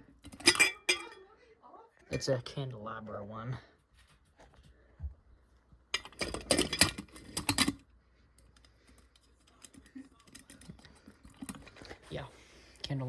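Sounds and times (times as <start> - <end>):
glass and metal parts clinking: 0.2 - 1.2, 6.0 - 7.8.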